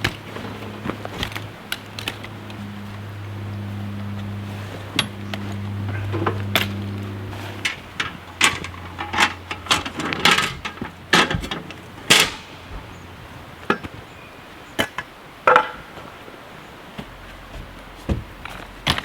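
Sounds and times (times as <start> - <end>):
camp gear knocking and clattering: 0.0 - 4.5, 5.1 - 14.1.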